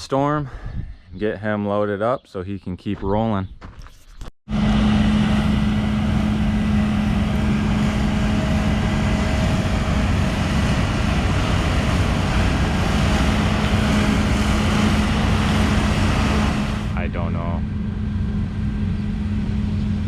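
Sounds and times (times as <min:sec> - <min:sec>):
vehicle engine running: 0:04.5 - 0:20.0.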